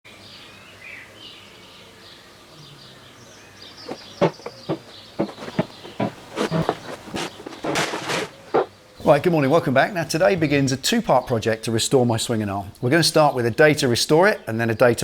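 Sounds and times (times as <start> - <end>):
birds chirping faintly: 0.1 - 15.0
sharp knocks and clatters: 3.9 - 8.7.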